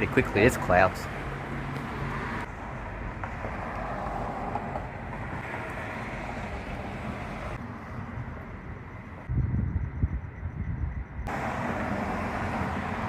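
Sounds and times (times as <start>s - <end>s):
storm wind rushing: 9.2s - 11.3s.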